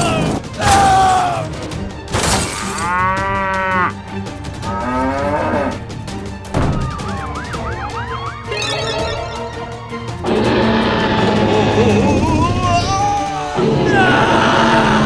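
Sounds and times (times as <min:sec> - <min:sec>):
background music: 0:00.0 - 0:15.0
drawn-out animal-like calls: 0:02.6 - 0:04.0.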